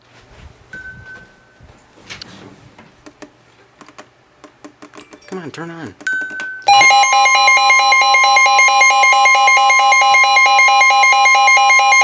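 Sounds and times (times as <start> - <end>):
steady alarm tone: 6.6 - 12.0
two-tone electronic warble: 6.7 - 12.0.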